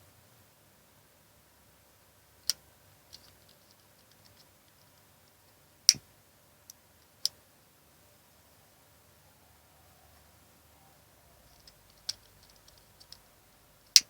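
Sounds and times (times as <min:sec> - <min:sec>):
faint small ticks: 0:02.4 - 0:06.0, 0:06.6 - 0:07.4, 0:11.4 - 0:14.0.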